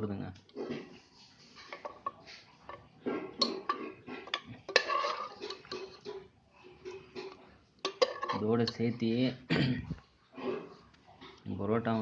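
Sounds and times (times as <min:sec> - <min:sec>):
spoon scraping dish: 0:01.4 - 0:09.2
metal spoon clinking on dish: 0:03.4 - 0:06.2, 0:07.2 - 0:08.9.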